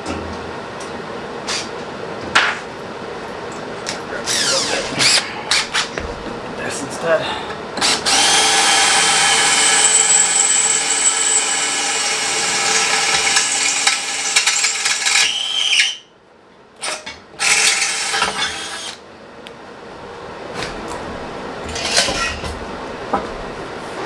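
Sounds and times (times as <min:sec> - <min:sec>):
electric drill boring into metal: 0:04.3 - 0:05.6, 0:07.8 - 0:16.0, 0:16.8 - 0:19.0.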